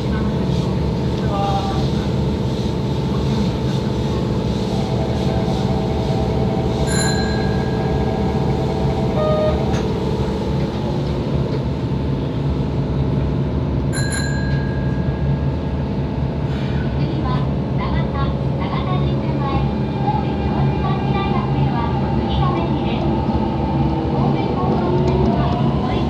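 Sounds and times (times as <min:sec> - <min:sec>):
subway car rumble: 0:00.0 - 0:26.0
bell-like chime dings: 0:06.8 - 0:08.2, 0:14.0 - 0:15.4.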